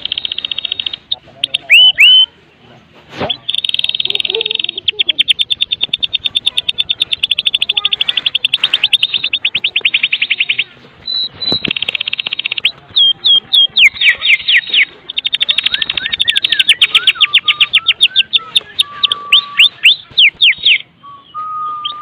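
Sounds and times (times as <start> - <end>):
bird rattling call: 3.3 - 18.4.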